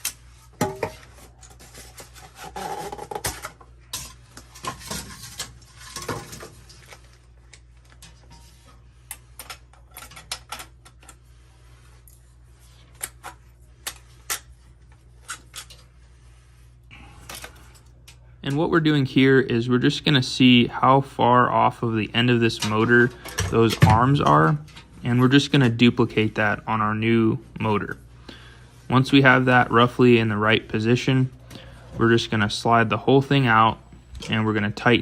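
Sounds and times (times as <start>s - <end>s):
rubbing and scraping: 0.0s - 16.9s
steady low hum: 0.0s - 35.0s.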